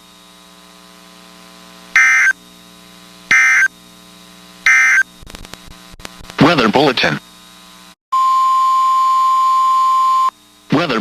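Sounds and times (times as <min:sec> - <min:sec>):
buzzing data bursts: 0:01.9 - 0:02.4, 0:03.3 - 0:03.8, 0:04.6 - 0:06.4.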